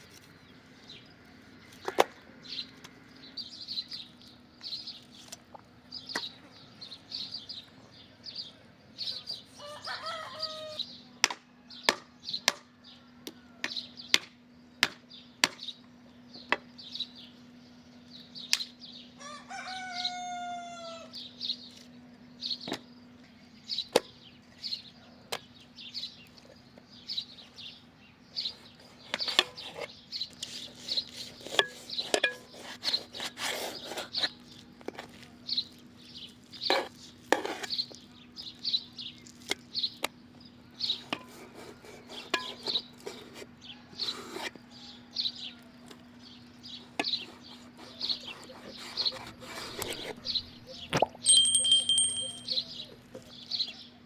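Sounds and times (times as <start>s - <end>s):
rooster crowing: 9.6s - 10.8s, 19.2s - 21.1s
high chirping: 50.3s - 52.8s.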